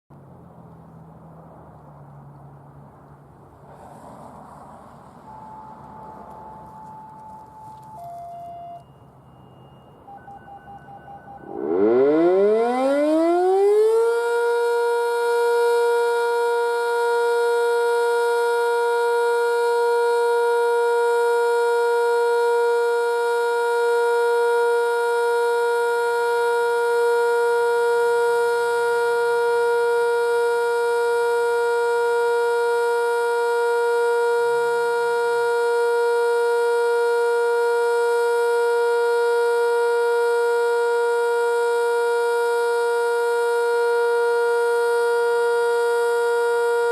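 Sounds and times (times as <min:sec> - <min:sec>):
warning siren steady tone: 0:04.5 - 0:46.9.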